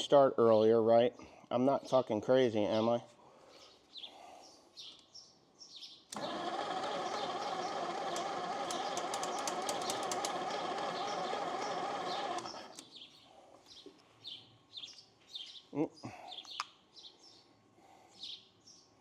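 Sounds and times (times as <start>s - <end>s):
electric starter cranking engine: 6.1s - 12.9s.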